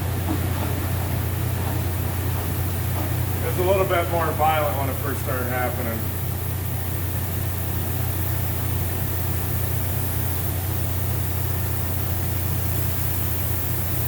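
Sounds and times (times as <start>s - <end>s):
compressed air blowing through hose: 5.1s - 14.0s.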